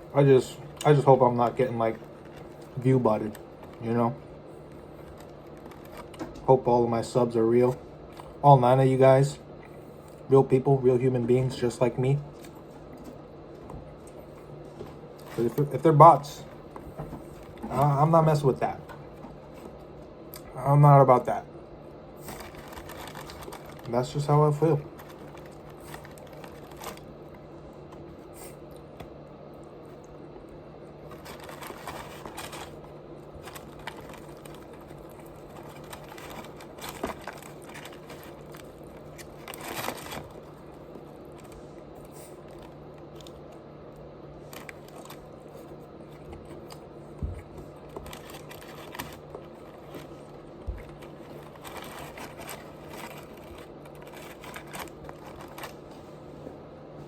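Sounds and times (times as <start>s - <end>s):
steady low hum: 0.0s - 57.0s.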